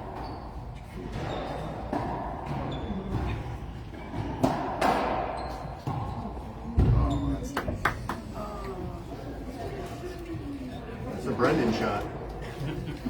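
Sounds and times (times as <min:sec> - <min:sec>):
racquet hitting ball: 0:04.1 - 0:06.2.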